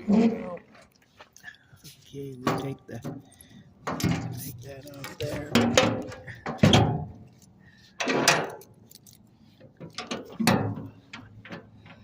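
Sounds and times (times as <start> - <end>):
objects knocking and rattling: 2.4 - 7.2.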